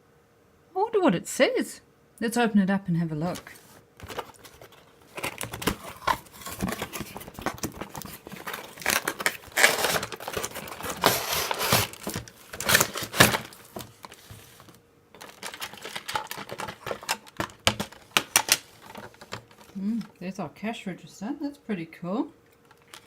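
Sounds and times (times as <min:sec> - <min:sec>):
packaging crinkling and tearing: 0:03.3 - 0:19.8, 0:22.6 - 0:23.0.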